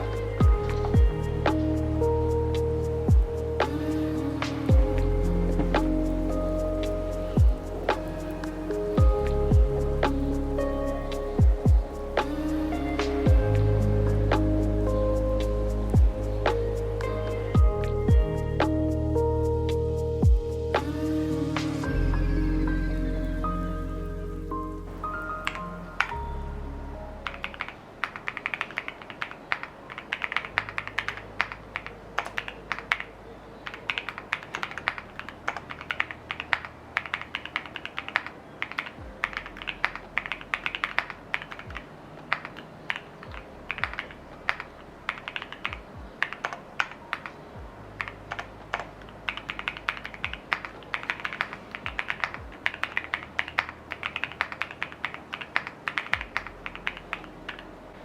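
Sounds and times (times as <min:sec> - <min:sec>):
mechanical keyboard typing: 0:48.0 - 0:57.6.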